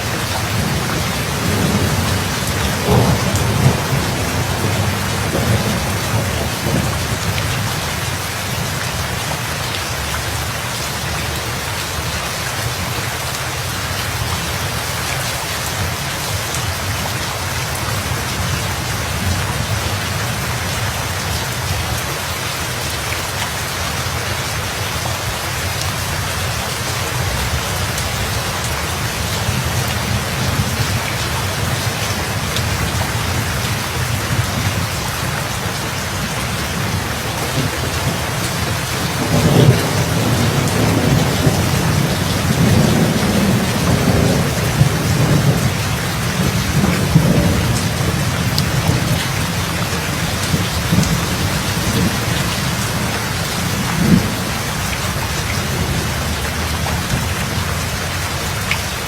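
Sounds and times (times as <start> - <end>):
rolling thunder: 0.0 - 8.2, 27.2 - 57.9
heavy rain: 0.0 - 59.0.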